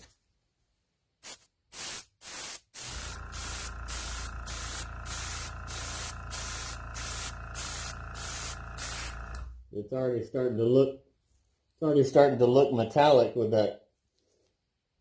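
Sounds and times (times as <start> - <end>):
airbrush hissing bursts: 1.2 - 9.5
motor hum: 2.8 - 9.6.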